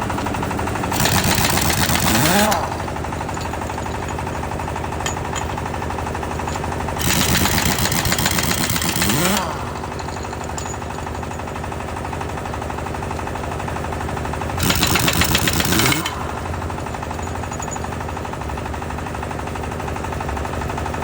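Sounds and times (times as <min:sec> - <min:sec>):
impact wrench rattling: 0:00.1 - 0:12.3, 0:14.6 - 0:18.4.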